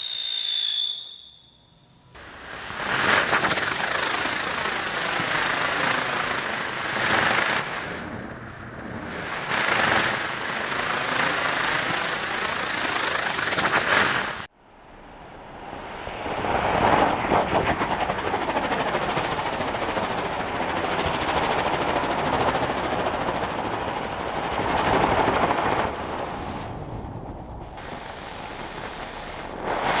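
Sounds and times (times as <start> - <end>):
spinning firework hissing: 0.0 - 14.5, 27.8 - 30.0.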